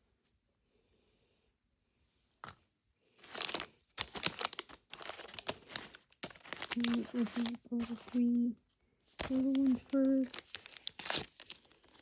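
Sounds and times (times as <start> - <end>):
plastic packaging tearing and crinkling: 3.2 - 8.4, 9.2 - 12.0.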